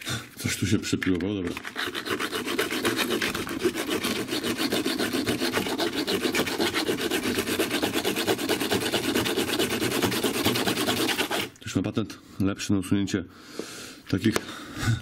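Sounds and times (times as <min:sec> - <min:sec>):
hacksaw sawing through metal: 0:01.6 - 0:11.6.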